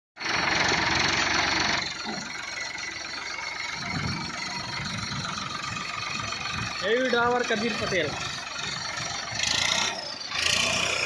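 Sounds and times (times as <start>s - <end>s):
farm machinery engine idling: 0.2s - 11.0s.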